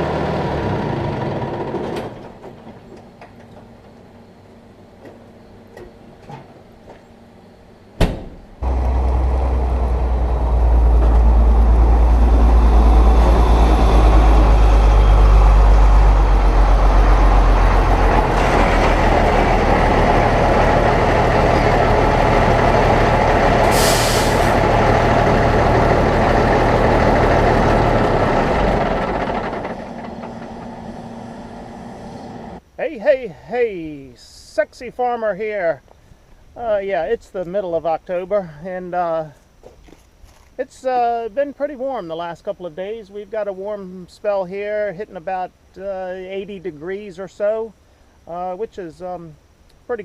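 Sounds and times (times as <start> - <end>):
large diesel engine humming: 0.0 - 7.3, 8.5 - 32.7
short hiss: 23.6 - 24.6.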